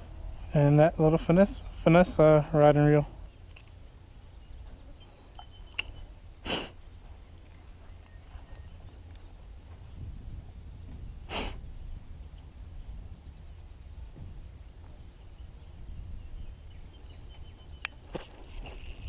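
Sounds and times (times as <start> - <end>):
steady low rumble: 0.0 - 18.0
person sniffing: 6.4 - 6.8, 11.3 - 11.6.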